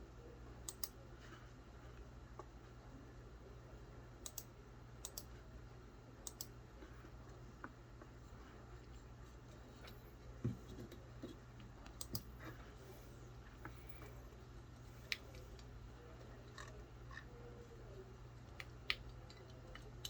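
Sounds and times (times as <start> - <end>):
steady low hum: 0.0 - 20.0
mouse and keyboard clicks: 0.7 - 1.0, 6.2 - 6.5, 11.8 - 12.3.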